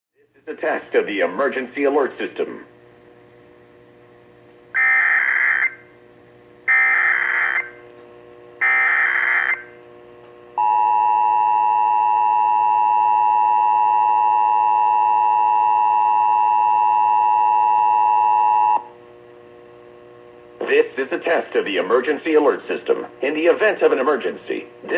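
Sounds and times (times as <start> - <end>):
two-tone attention signal: 4.8 - 5.8, 6.7 - 7.8, 8.6 - 9.7
warbling digital data screech: 4.8 - 5.8, 6.7 - 7.8, 8.6 - 9.7.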